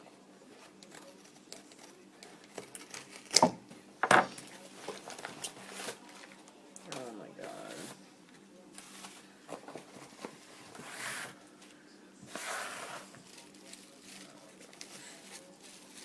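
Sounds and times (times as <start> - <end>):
packaging rustling and tearing: 8.8 - 16.0.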